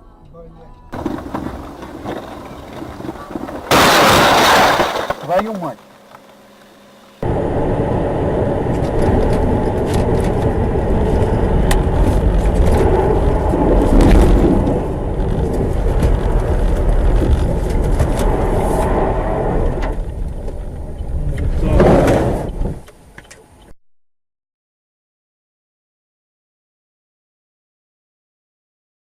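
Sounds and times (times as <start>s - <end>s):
car road noise rumble: 0.8s - 23.7s.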